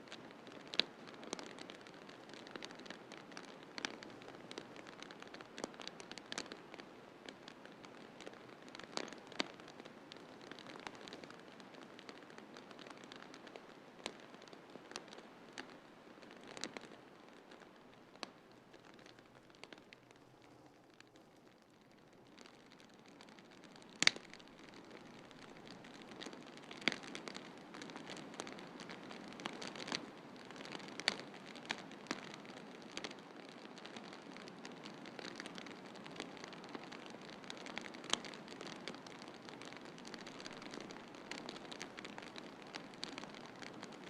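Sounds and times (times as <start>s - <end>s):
wood fire crackling: 0.0s - 44.0s.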